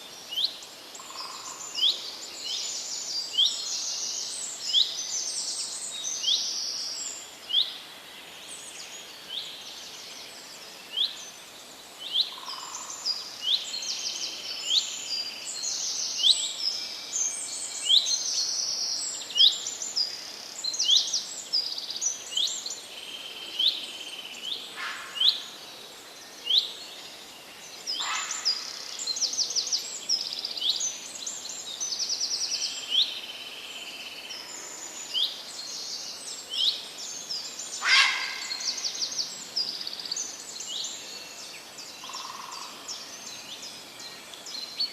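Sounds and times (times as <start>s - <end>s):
steady background hiss: 0.0s - 44.9s
birds chirping and trilling: 26.4s - 44.9s.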